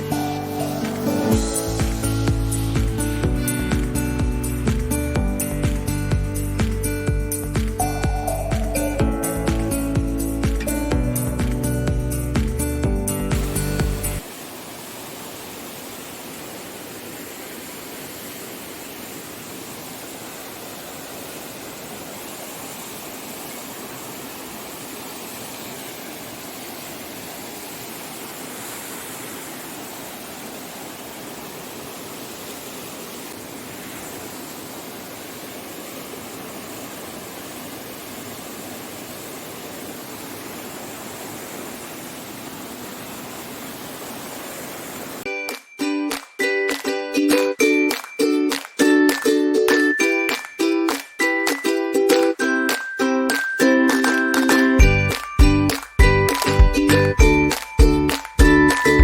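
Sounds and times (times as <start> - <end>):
waterfall rushing: 0.0 - 11.6, 13.2 - 45.3, 46.1 - 59.0.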